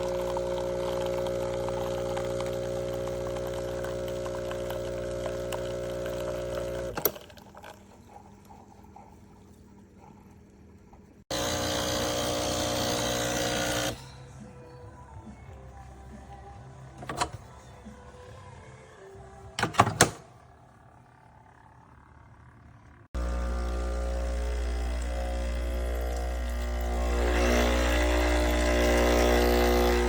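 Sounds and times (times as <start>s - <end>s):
espresso machine hissing: 0.0s - 7.0s, 11.3s - 14.0s, 23.2s - 30.0s
espresso machine humming: 0.0s - 7.8s, 11.3s - 14.0s, 23.2s - 30.0s.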